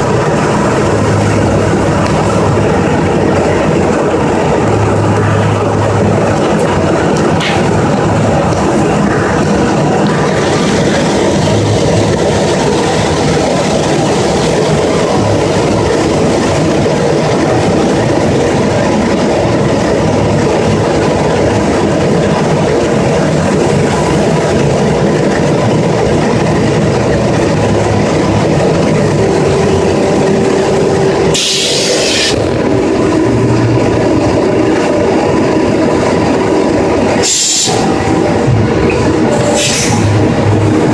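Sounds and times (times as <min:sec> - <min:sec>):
steady low machine tone: 0:23.2 - 0:37.1.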